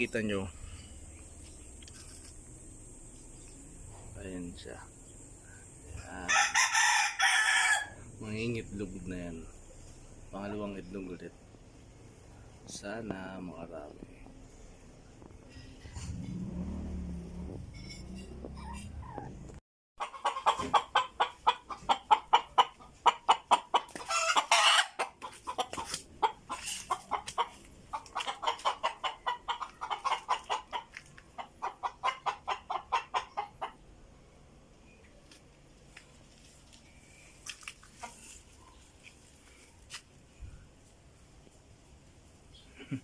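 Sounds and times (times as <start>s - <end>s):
hen cackling: 6.3s - 8.0s, 20.0s - 33.8s.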